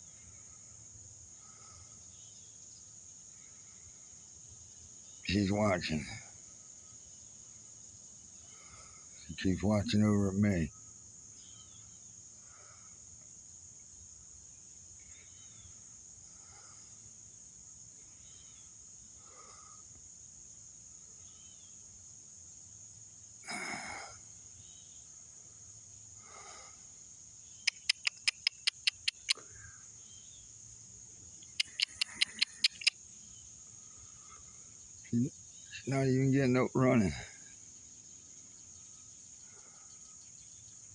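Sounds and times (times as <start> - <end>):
crickets chirping: 0.0 - 40.9
quick runs of sharp clicks: 27.7 - 29.4, 31.6 - 32.9.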